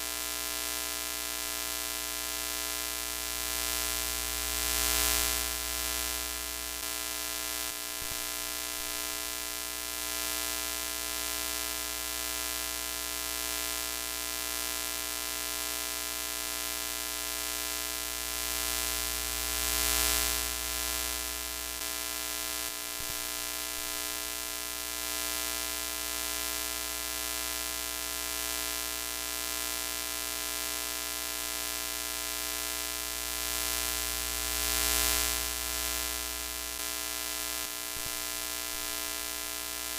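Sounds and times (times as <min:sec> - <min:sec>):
electric buzz: 0:32.7 - 0:39.9
static hiss: 0:33.3 - 0:39.1.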